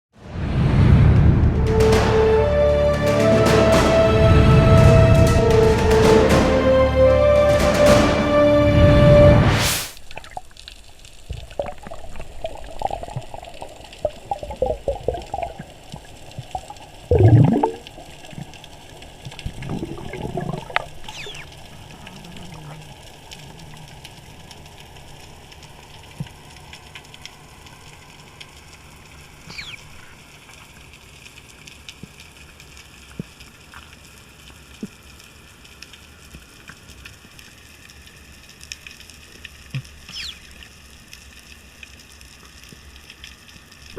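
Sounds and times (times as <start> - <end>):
low underwater hum: 10.0 - 43.9
underwater bubbling and gurgling: 10.0 - 43.9.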